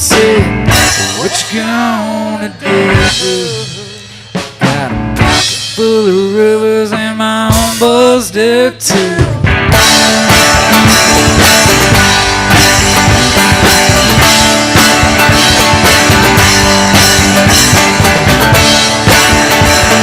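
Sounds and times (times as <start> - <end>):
live rock band playing: 0.0 - 20.0.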